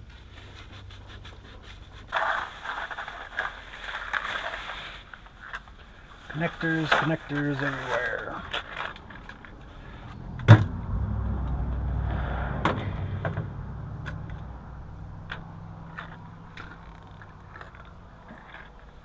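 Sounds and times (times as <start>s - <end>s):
low rumble: 8.8s - 17.9s
sharp knock or slam: 12.5s - 13.6s.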